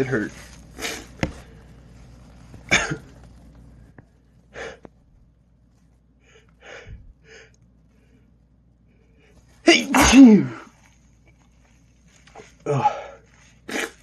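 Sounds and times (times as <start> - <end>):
man sneezing: 9.7 - 10.7, 12.7 - 14.0.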